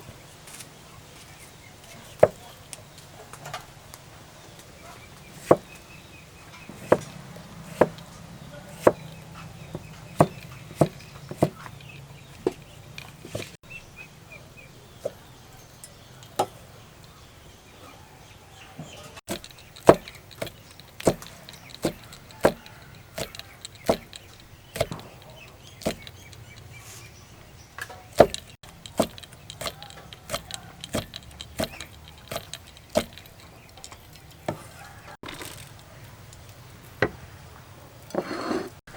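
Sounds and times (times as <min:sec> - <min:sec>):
knife chopping on wooden board: 0:05.4 - 0:05.7, 0:06.7 - 0:08.1, 0:08.7 - 0:09.1, 0:09.7 - 0:11.7, 0:19.3 - 0:25.2, 0:25.8 - 0:26.3, 0:28.1 - 0:33.3.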